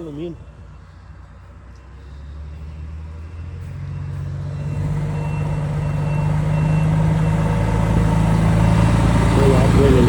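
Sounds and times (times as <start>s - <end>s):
truck diesel engine running: 0.0s - 10.0s
reversing alarm beeping: 1.7s - 9.7s.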